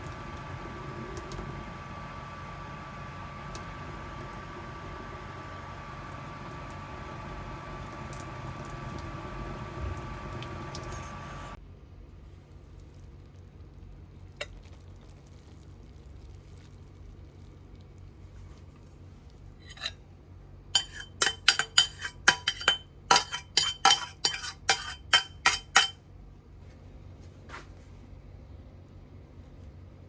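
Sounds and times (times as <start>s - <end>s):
utensil clinking against a dish: 20.8s - 26.0s.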